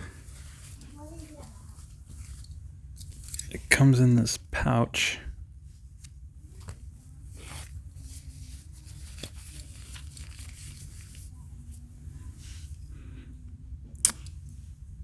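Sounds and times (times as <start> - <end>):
rustling of hand warmer pouch: 0.0 - 3.6, 6.5 - 11.9
steady low hum: 0.0 - 15.0.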